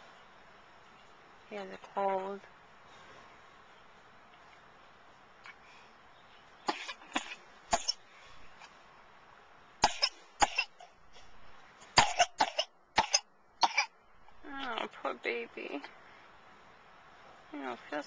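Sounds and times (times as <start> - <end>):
baby coughing: 6.7 - 8.0, 9.8 - 10.8, 12.0 - 13.9.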